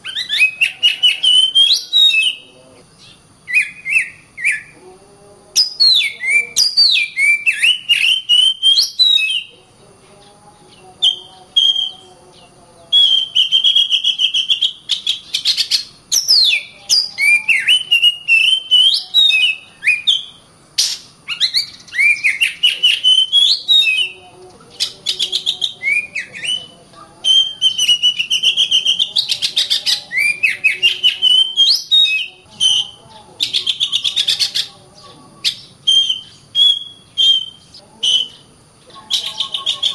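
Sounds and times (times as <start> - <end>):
bird singing whistled notes: 0.0 - 4.8, 5.6 - 9.5, 10.6 - 39.9.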